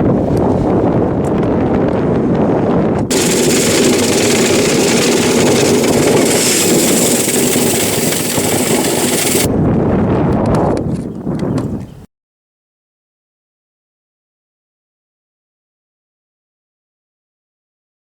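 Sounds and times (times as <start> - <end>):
rushing hiss: 3.1 - 9.5
vent cleaning machine running: 3.1 - 9.5.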